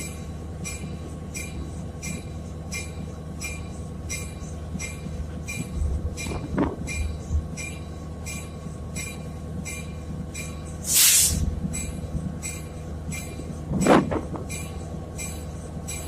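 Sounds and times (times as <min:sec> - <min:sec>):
locomotive bell ringing: 0:00.0 - 0:10.9, 0:11.5 - 0:16.0
loud steam hiss: 0:10.8 - 0:11.5.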